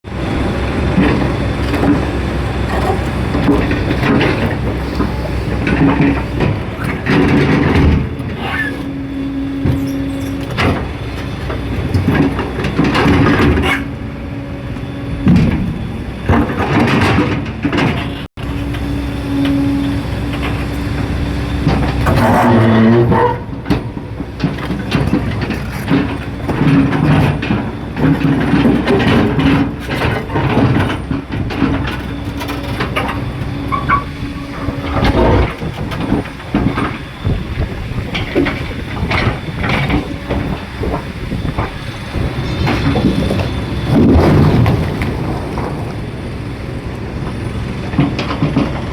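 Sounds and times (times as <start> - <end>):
heavy machinery rumbling: 0.0 - 48.9.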